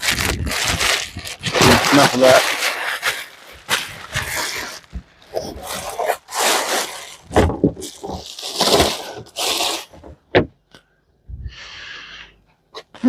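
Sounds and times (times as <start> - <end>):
bubble wrap crinkling: 0.0 - 10.1.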